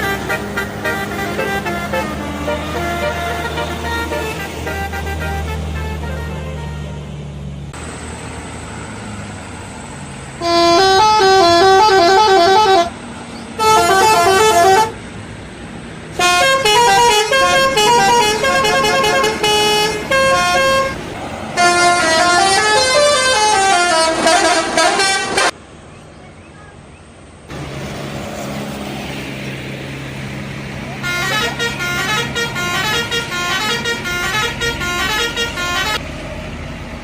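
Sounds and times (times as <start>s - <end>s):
bus air horn playing tunes: 0.0s - 7.2s, 10.4s - 13.0s, 13.6s - 15.0s, 16.2s - 25.6s, 31.0s - 36.0s
steady vehicle noise: 0.0s - 37.0s.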